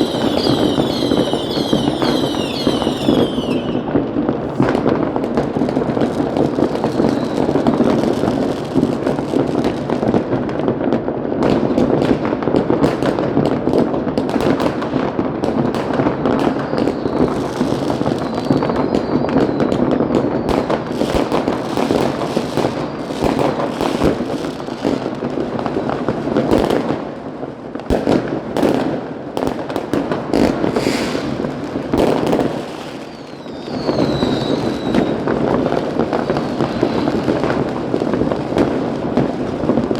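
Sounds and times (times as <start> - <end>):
firework whistles: 0.0 - 8.5, 16.4 - 25.0, 30.4 - 38.7
fireworks crackling and banging: 0.0 - 39.9.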